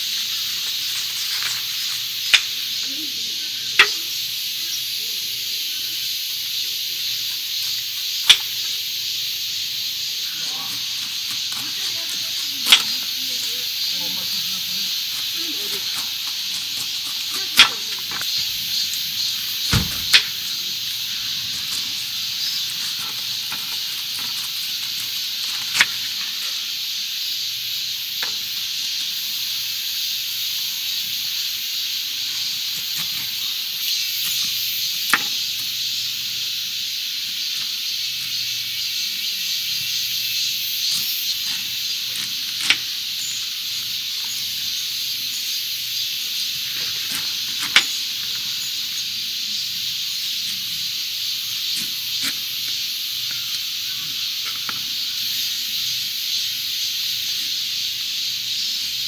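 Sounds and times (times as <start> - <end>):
food sizzling on griddle: 0.0 - 59.0
utensil clicking against pan: 11.3 - 13.5.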